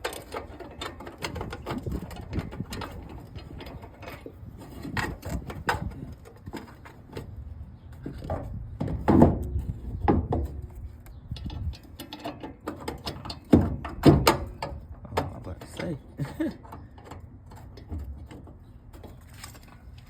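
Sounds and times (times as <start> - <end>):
clinks and knocks on car door hinge: 11.4 - 17.0.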